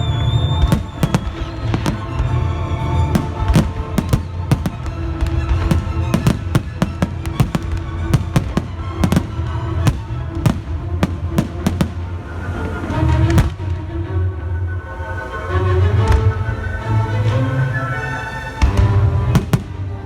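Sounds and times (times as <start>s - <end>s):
fireworks bangs: 0.0s - 13.8s, 18.6s - 20.0s.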